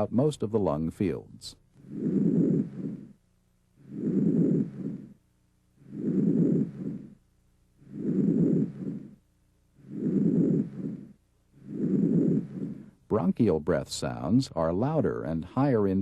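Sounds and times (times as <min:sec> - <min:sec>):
soft breathing: 0:01.8 - 0:03.2, 0:03.8 - 0:13.1.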